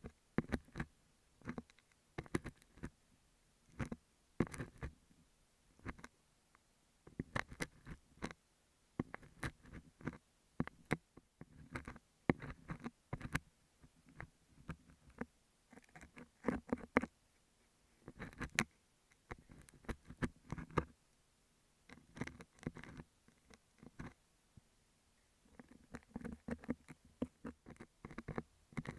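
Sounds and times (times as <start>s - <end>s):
metal scaler scratching wax: 18.1s - 18.6s, 21.9s - 24.2s, 25.6s - 28.9s.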